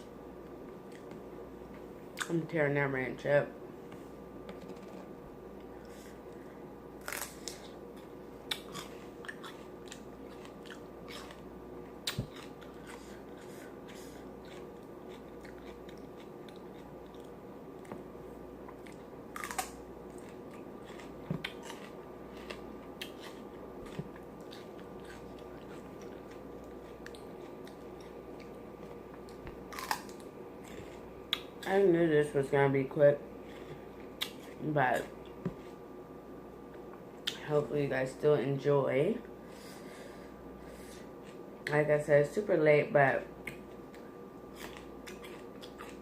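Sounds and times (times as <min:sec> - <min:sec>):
sharp crunches of biting: 0:07.0 - 0:07.8, 0:08.5 - 0:11.4, 0:18.8 - 0:28.1, 0:29.7 - 0:31.5
chewing and lip-smacking: 0:07.1 - 0:18.0, 0:18.6 - 0:31.6, 0:33.5 - 0:35.8, 0:43.4 - 0:46.0.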